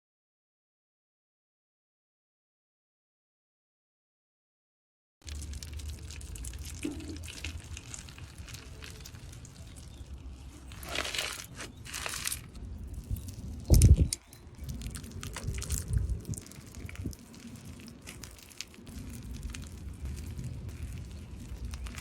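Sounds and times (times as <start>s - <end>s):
crunchy slime squishing by hand: 5.2s - 22.0s.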